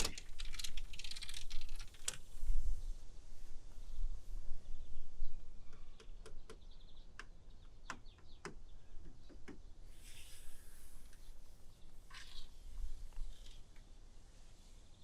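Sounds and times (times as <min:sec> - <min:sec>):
brief hiss: 0:09.9 - 0:11.5.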